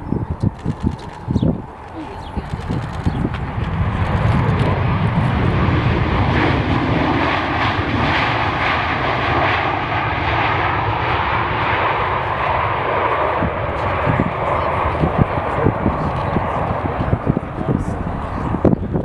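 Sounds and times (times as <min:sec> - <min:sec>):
jet engines roaring: 0:00.0 - 0:19.0
wind buffeting microphone: 0:00.0 - 0:19.0.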